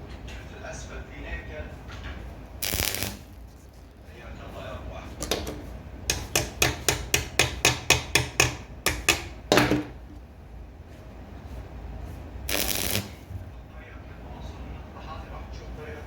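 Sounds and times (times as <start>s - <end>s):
hammer tapping: 5.2s - 10.0s.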